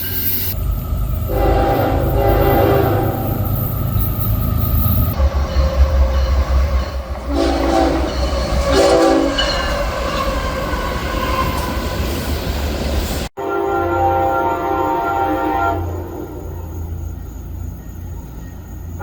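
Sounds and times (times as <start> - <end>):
passing train rumbling: 0.0 - 19.0
chord train horn held: 1.3 - 3.4, 7.2 - 9.5, 13.4 - 16.8
train horn blasts: 1.3 - 3.6, 7.2 - 11.8, 13.4 - 17.0.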